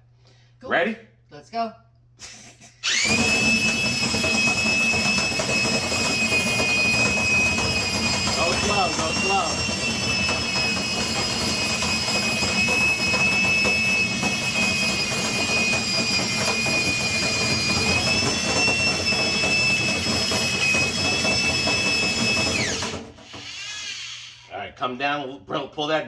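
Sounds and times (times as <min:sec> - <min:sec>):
power drill whining: 0:02.8 - 0:24.5.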